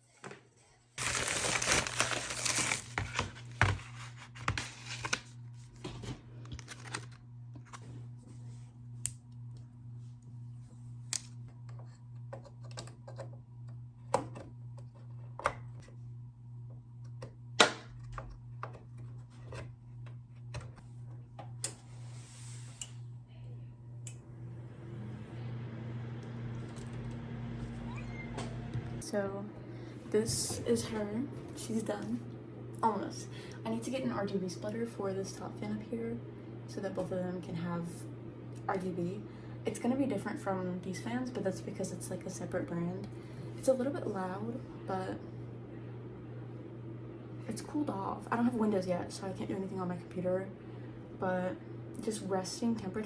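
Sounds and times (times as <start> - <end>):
computer fans humming: 17.0 - 53.0.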